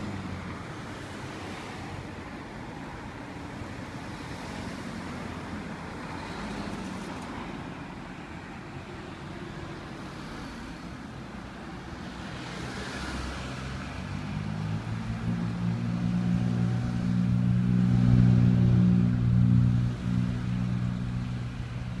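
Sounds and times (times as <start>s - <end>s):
vehicle engine drone: 0.0s - 8.1s, 8.8s - 22.0s
car tyre hiss passing: 3.9s - 7.8s, 9.9s - 11.4s.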